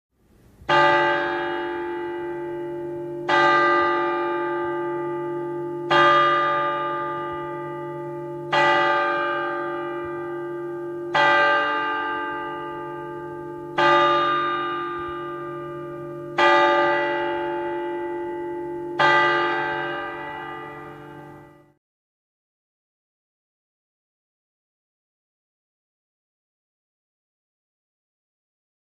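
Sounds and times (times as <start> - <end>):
large bell tolling: 0.7 - 21.8.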